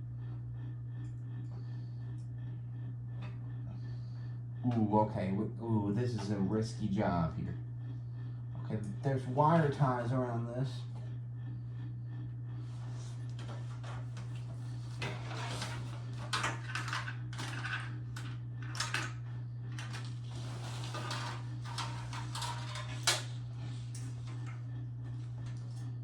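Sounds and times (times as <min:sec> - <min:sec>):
low hum: 0:00.0 - 0:26.0
rustling and clicks handling computer: 0:19.7 - 0:24.4.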